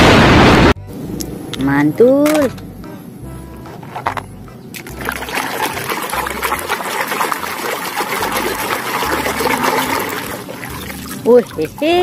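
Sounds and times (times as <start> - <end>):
water splashing over plastic toy: 4.8 - 12.0.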